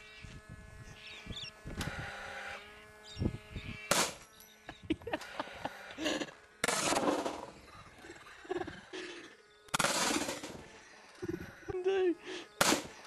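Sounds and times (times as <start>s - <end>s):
nail gun firing bangs: 3.9s - 4.2s, 6.6s - 7.5s, 9.7s - 10.6s, 12.6s - 13.0s.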